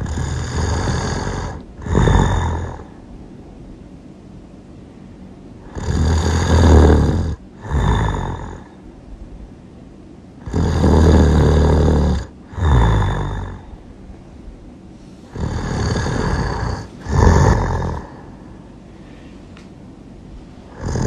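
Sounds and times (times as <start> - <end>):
person snoring loudly: 0.0 - 3.0, 5.6 - 8.8, 10.4 - 13.8, 15.3 - 18.4, 20.7 - 21.0.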